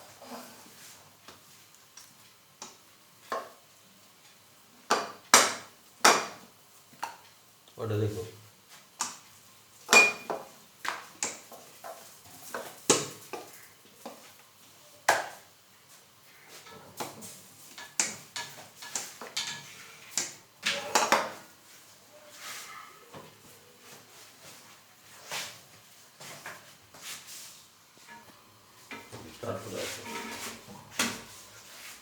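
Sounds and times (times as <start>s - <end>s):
metal utensils clinking: 30.0s - 30.7s.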